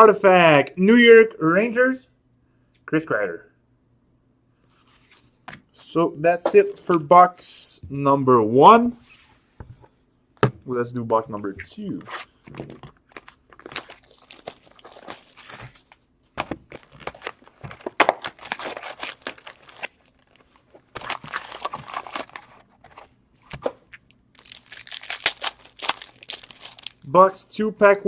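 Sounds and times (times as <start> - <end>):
plastic wrapping crinkling and tearing: 13.0 - 16.0, 16.6 - 27.1.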